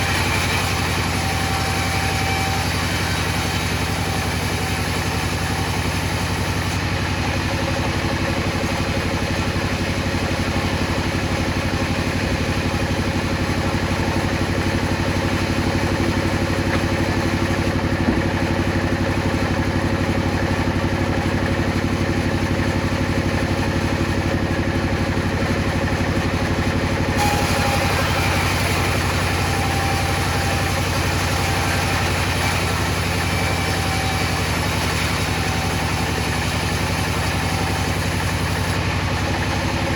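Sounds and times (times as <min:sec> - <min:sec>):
motor humming: 0:27.1 - 0:39.9.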